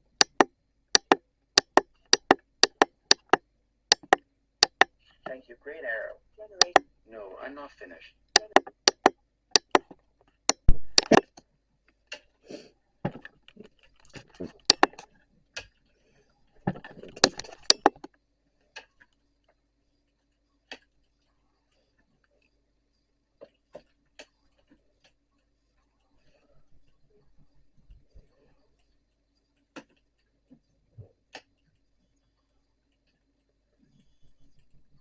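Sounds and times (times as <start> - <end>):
sharp irregular clicks and knocks: 0.0 - 5.2, 6.6 - 6.9, 8.4 - 12.3, 13.0 - 15.8, 16.6 - 18.2, 27.8 - 32.0
faint steady hum: 0.0 - 35.0.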